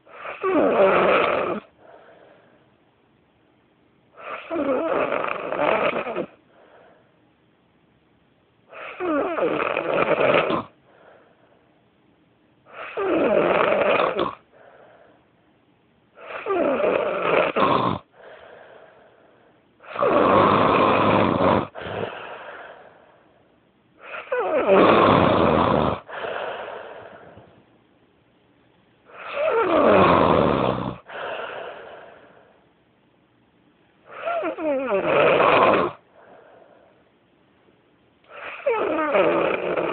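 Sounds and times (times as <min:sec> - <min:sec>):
man snoring loudly: 0:00.1 - 0:01.7, 0:04.2 - 0:06.4, 0:08.9 - 0:10.8, 0:12.8 - 0:14.4, 0:16.2 - 0:18.1, 0:19.9 - 0:22.2, 0:24.1 - 0:26.1, 0:29.2 - 0:31.1, 0:34.2 - 0:36.0, 0:38.4 - 0:39.9.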